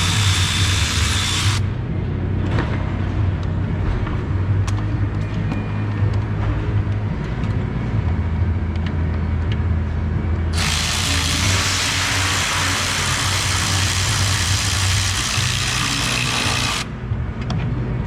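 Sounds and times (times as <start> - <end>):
power tool whirring: 0.0 - 1.6, 10.6 - 16.9.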